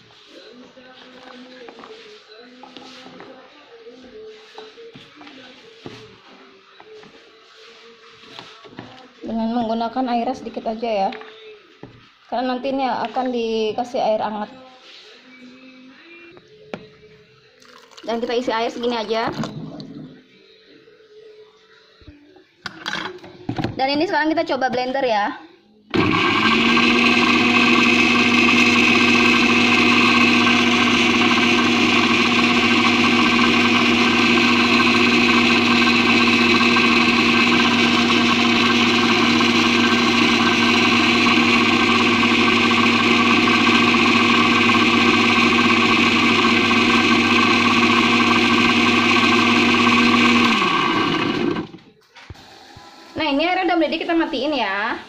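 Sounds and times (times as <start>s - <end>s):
electric blender motor running: 25.9s - 51.8s.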